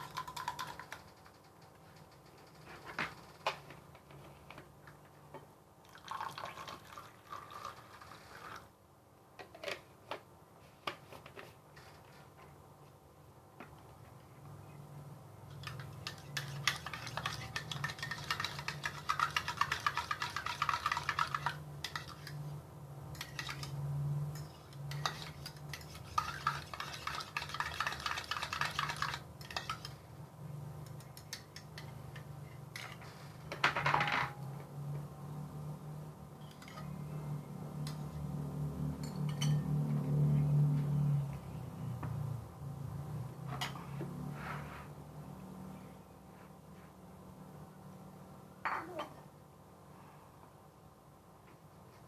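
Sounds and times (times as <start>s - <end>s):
spoon clinking against a dish: 39.0s - 39.7s.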